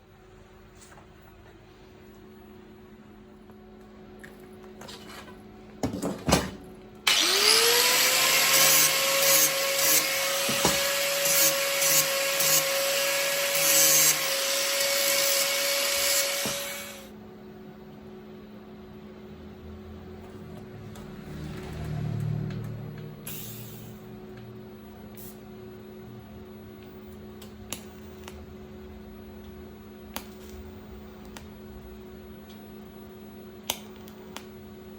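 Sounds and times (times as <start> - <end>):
welding arc crackling hiss: 23.2 - 24.1.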